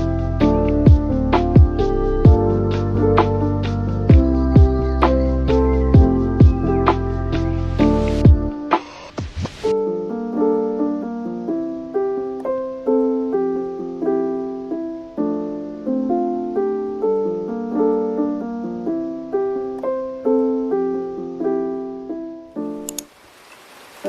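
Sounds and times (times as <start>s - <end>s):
gentle solo piano piece: 9.8s - 22.9s.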